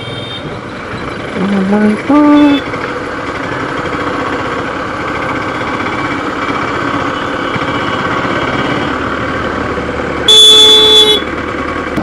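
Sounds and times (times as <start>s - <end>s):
road and wind noise: 0.0s - 12.0s
motorcycle engine running: 0.1s - 12.0s.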